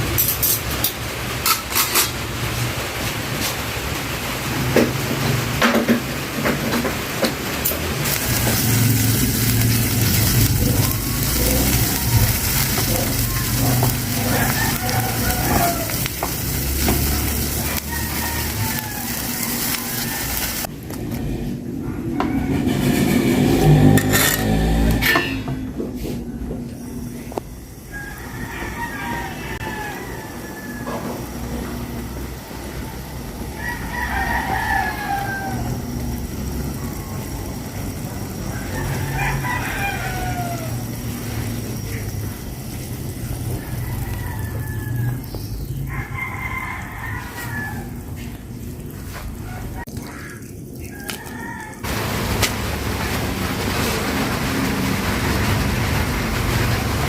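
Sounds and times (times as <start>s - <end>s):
food sizzling in a pot: 0.0s - 20.7s, 22.8s - 25.8s, 27.1s - 57.0s
rooster crowing: 8.0s - 20.7s, 21.7s - 25.7s, 27.8s - 52.2s.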